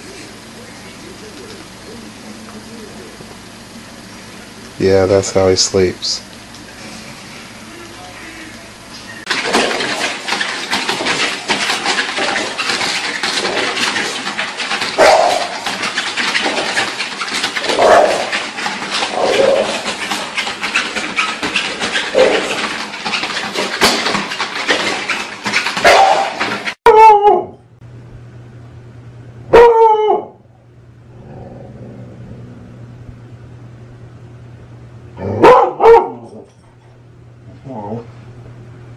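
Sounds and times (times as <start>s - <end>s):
scratchy clattering noise: 9.2s - 26.8s
dog barking: 15.0s - 15.5s, 17.8s - 18.3s, 25.8s - 27.6s, 29.5s - 30.4s, 35.2s - 36.4s.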